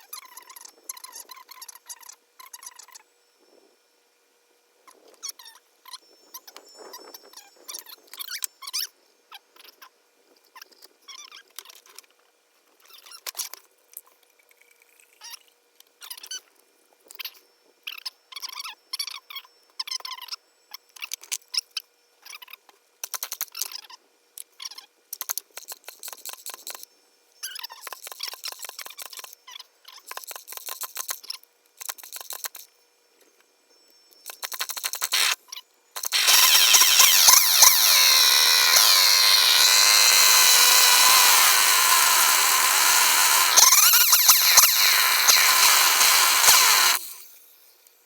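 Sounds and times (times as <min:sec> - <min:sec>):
chainsaw engine revving: 0:35.1 - 0:35.4, 0:36.0 - 0:47.4.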